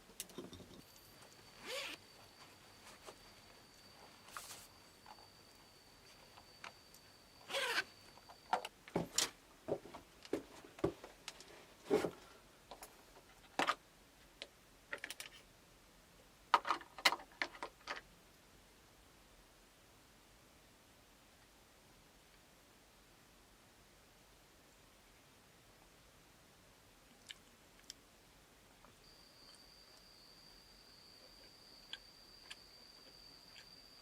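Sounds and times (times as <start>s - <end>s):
faint high whine: 0.0s - 13.2s, 27.6s - 34.0s.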